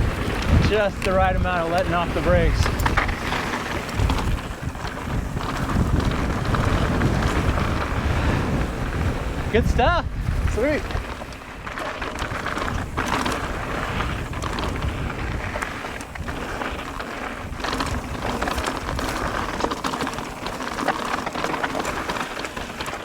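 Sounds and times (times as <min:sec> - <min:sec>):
bike tyres crackling over gravel: 0:00.0 - 0:23.0
wind buffeting microphone: 0:00.0 - 0:23.0
clicks and rattles: 0:00.2 - 0:07.6.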